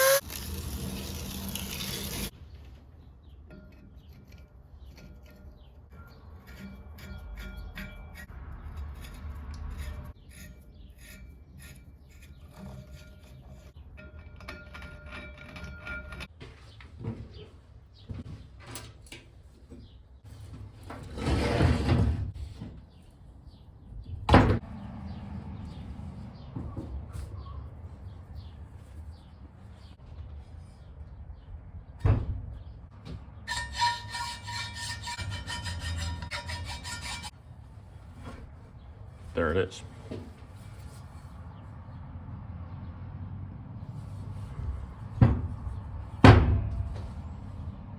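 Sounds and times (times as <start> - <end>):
clunks and knocks: 45.1 - 47.2.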